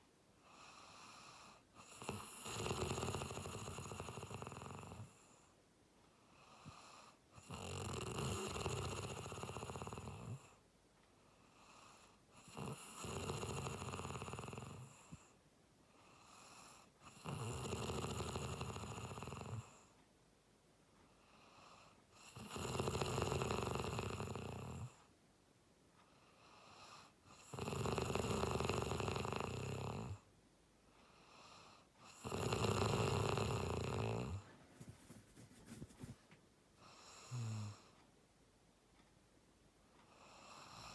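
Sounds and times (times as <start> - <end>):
quiet breathing: 0.3 - 20.1, 20.9 - 22.5, 26.0 - 38.2, 39.8 - 40.9
person snoring: 1.8 - 5.2, 7.4 - 10.4, 12.4 - 15.0, 17.1 - 19.7, 22.3 - 25.0, 27.4 - 30.2, 32.1 - 34.5, 36.9 - 37.9.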